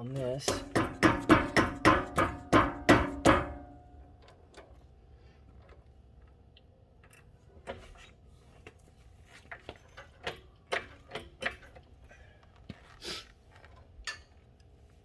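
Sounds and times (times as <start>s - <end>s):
metal clinks and knocks: 0.1s - 4.8s.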